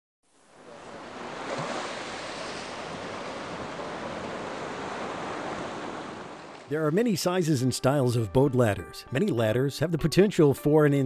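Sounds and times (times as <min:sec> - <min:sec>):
water waves washing: 0:00.5 - 0:07.6.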